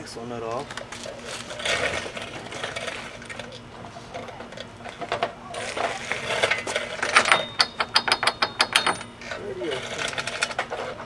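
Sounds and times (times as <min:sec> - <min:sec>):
metal hand tools clinking: 0:05.6 - 0:10.6.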